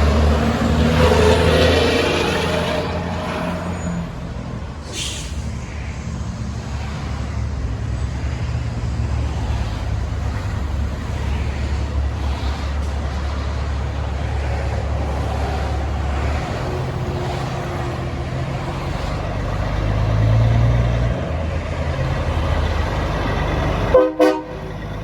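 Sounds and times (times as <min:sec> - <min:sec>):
diesel engine droning: 0:00.0 - 0:25.0
air brake hiss: 0:04.8 - 0:05.7.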